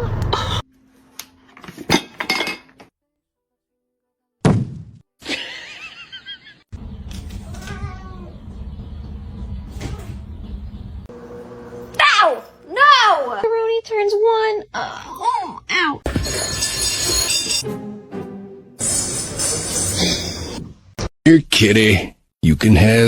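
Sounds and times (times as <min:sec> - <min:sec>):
cats meowing: 0:07.4 - 0:08.4.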